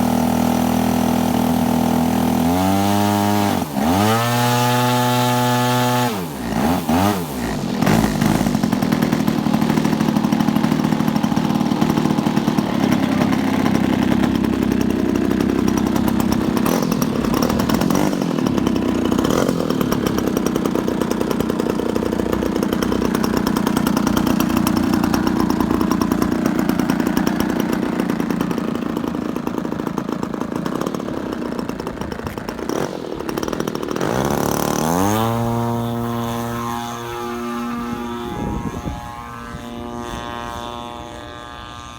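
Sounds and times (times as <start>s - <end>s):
model airplane engine revving: 0.0s - 41.9s.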